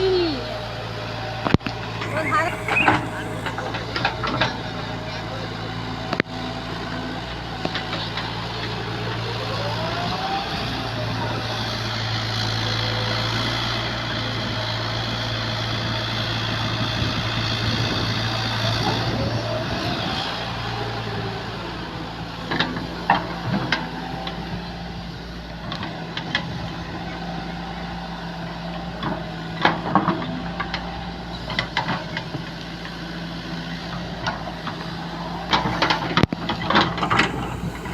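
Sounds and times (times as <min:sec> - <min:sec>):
diesel engine running: 0:36.5 - 0:37.9
high whine: 0:37.0 - 0:37.9.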